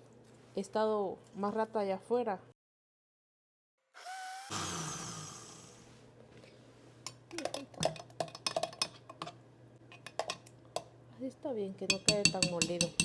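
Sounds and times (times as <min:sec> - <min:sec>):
utensil knocking against bowl: 0:11.9 - 0:13.0.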